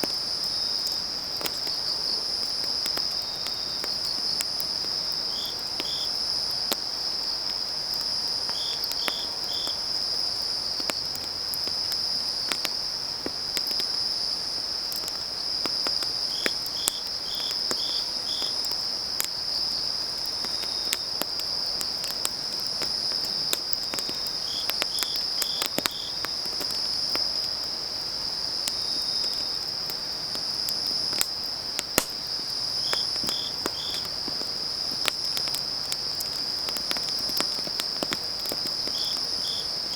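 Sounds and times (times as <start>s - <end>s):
firewood crackling: 0.0s - 39.9s
insect chirping: 0.0s - 39.9s
insect trilling: 38.7s - 39.9s.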